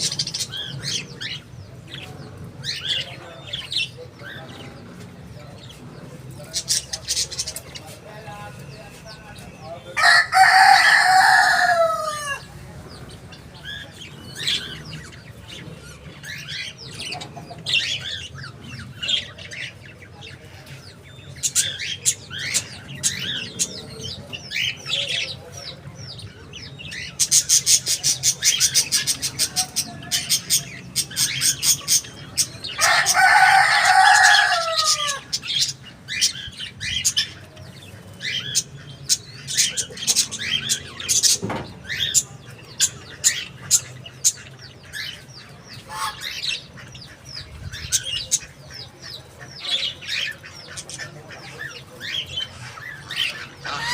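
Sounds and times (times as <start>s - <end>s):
budgerigars chirping and warbling: 0.0s - 53.9s
rooster crowing: 10.0s - 12.5s, 32.8s - 35.3s.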